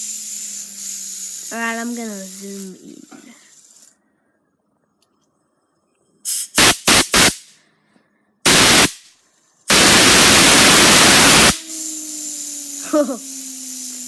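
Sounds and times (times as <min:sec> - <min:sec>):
compressed air blow gun hissing: 0:00.0 - 0:03.9, 0:06.3 - 0:07.6, 0:08.5 - 0:09.1, 0:09.7 - 0:14.0.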